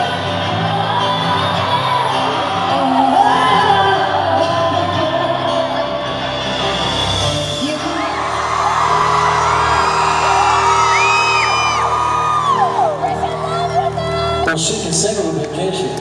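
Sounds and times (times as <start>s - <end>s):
live pop concert music: 0.0s - 16.0s
crowd whooping and screaming: 7.6s - 14.6s.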